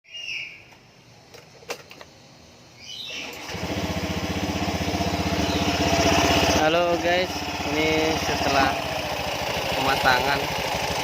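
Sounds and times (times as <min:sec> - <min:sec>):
scooter engine starting and running: 0:03.0 - 0:11.0.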